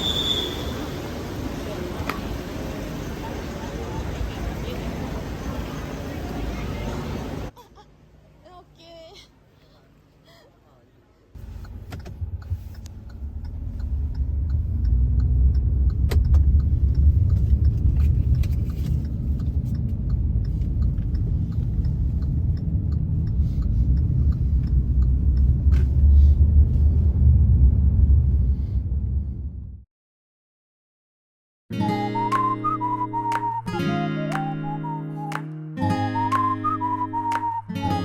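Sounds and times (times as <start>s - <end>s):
car cabin road rumble: 11.4s - 29.8s.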